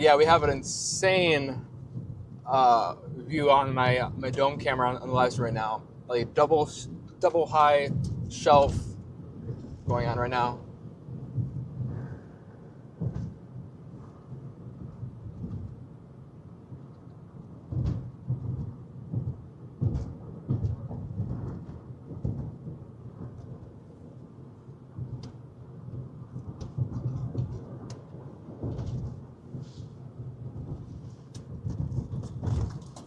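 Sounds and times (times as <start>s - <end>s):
car cabin rumble: 0.0s - 29.5s
short knocks and clicks: 17.7s - 22.6s.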